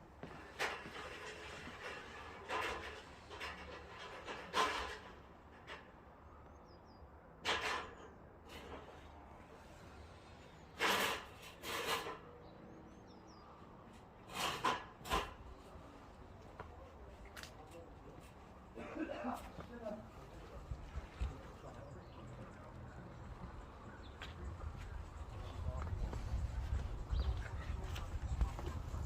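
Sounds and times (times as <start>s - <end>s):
short scraping noises: 7.5s - 12.4s, 14.2s - 15.7s.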